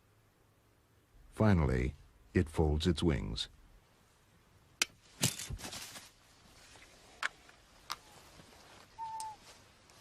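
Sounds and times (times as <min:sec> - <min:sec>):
rustling scuffle: 0:05.1 - 0:06.9, 0:08.0 - 0:10.0
whistled bird call: 0:09.0 - 0:09.4.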